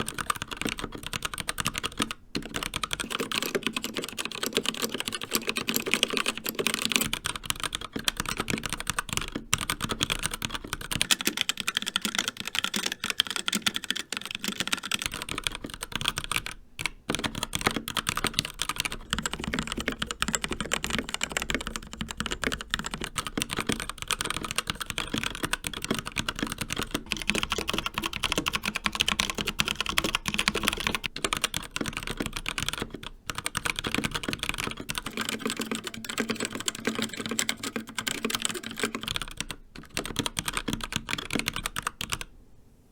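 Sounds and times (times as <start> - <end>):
mechanical keyboard typing: 0.0 - 42.3.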